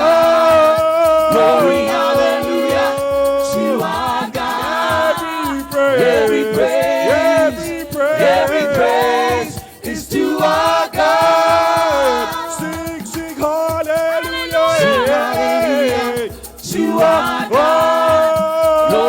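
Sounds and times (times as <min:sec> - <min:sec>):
gospel worship singing with band: 0:00.0 - 0:19.0.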